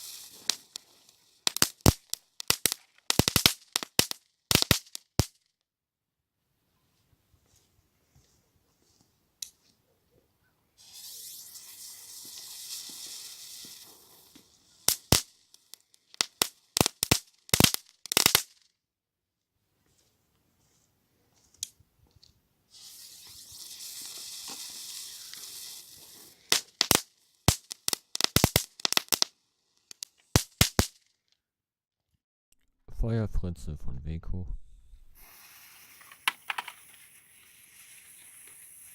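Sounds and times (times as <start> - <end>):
firework hissing spray of sparks: 0.0 - 5.3, 10.8 - 18.6, 22.7 - 31.0, 35.2 - 38.9
firework crackling pops: 0.0 - 5.5, 10.8 - 18.7, 22.7 - 31.3, 35.2 - 38.9.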